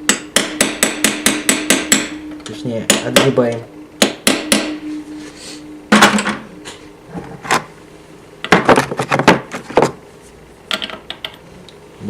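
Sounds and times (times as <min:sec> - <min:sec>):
hammer tapping metal tool: 0:00.0 - 0:03.4, 0:04.0 - 0:04.8.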